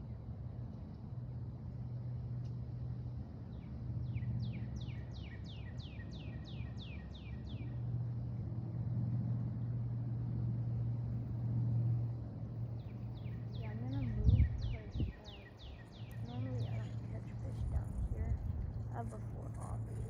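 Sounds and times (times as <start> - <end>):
steady low hum: 0.0 - 20.0
songbird singing: 3.4 - 7.9, 12.6 - 20.0.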